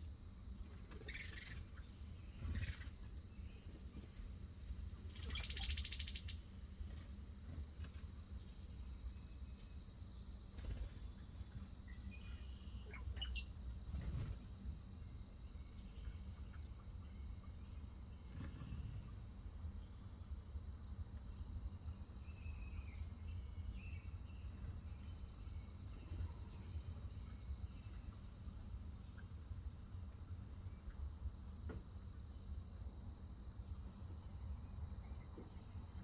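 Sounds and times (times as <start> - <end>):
high insect trill: 0.6 - 3.2.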